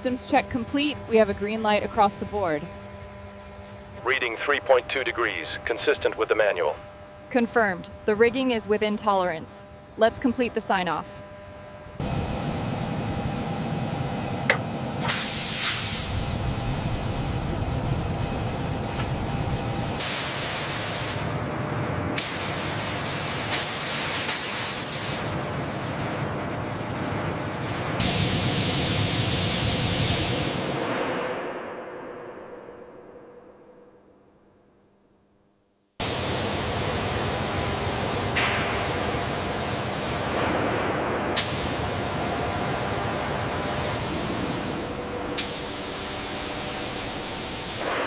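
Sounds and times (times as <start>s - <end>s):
steady low rumble: 0.0s - 10.6s, 11.5s - 23.4s
loud steady hiss: 14.9s - 21.4s, 27.5s - 30.8s, 41.4s - 48.0s
hissing spray bursts: 15.0s - 16.3s, 41.4s - 48.0s.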